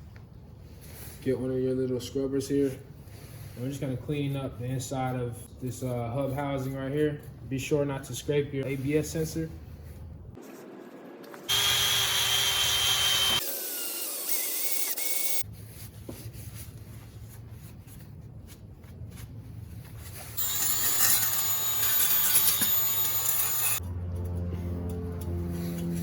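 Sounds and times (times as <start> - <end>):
power drill whining: 11.5 - 15.4, 20.4 - 23.8.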